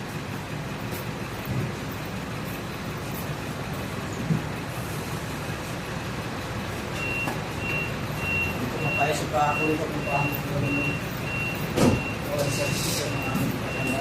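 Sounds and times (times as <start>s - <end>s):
low rumble of vehicles: 0.0s - 14.0s
reversing beeper: 7.0s - 14.0s.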